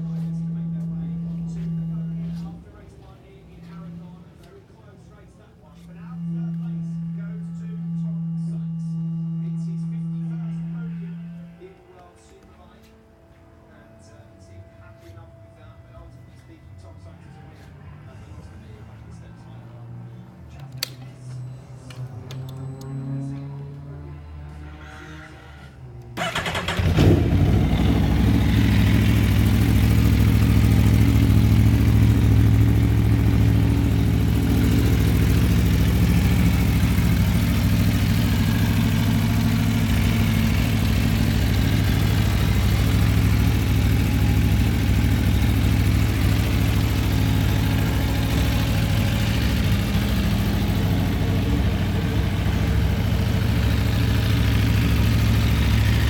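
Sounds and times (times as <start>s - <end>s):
motorcycle engine starting and idling: 0.0s - 11.6s, 26.0s - 56.0s.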